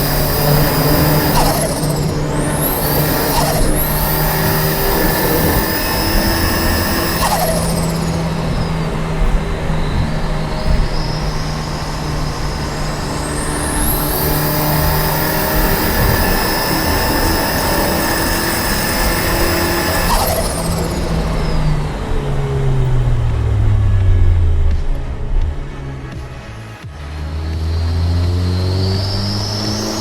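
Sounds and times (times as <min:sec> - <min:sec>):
car engine running: 0:00.0 - 0:30.0
turbo whine: 0:00.0 - 0:30.0.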